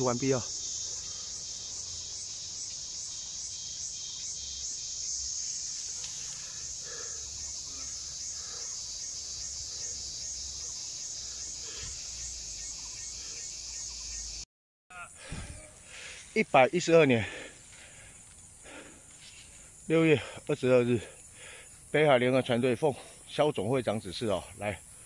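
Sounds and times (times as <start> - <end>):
high-pitched insect chorus: 0.0 - 25.0.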